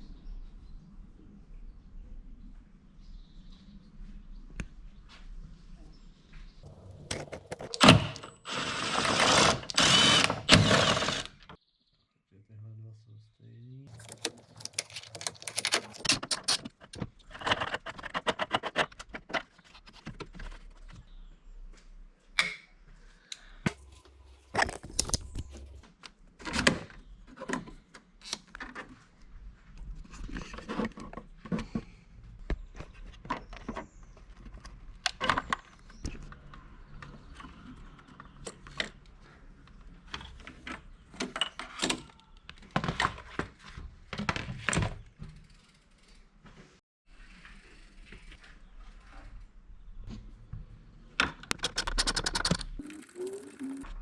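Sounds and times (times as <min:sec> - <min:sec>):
metal tools clinking and knocking: 0:13.9 - 0:16.7.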